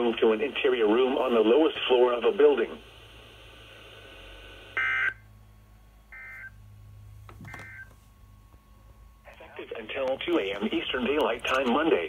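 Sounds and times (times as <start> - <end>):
weather radio broadcast: 0.0 - 4.0, 9.2 - 12.0
faint steady hum: 0.0 - 12.0
touch-tone beeps: 7.5 - 7.9.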